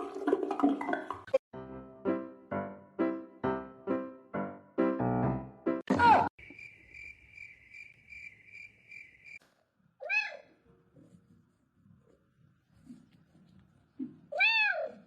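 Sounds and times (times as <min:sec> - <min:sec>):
cat meowing: 0:10.0 - 0:10.6, 0:14.3 - 0:15.0.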